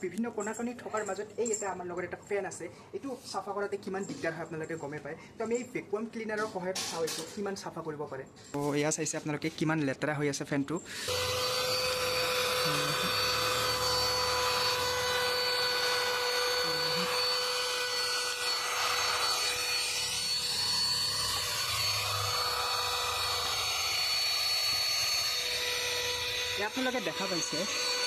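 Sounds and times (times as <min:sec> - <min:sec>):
handheld vacuum cleaner whine: 0:10.9 - 0:28.0.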